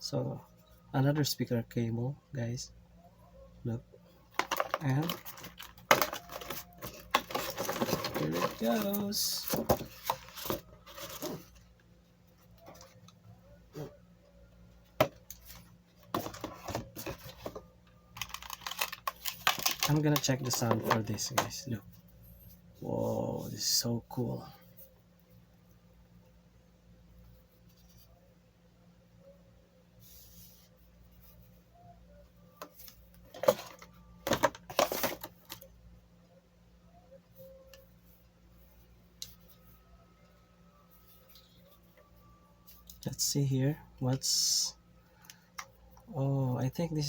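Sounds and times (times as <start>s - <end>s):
packaging rustling and small clicks: 4.3s - 11.6s, 15.2s - 21.6s
packaging clicks: 18.1s - 21.3s.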